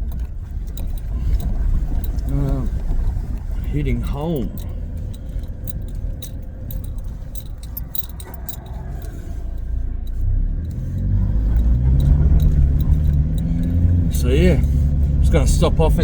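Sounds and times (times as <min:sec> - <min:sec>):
car engine and road rumble: 0:00.0 - 0:16.0
light clicking and rattling: 0:00.0 - 0:16.0.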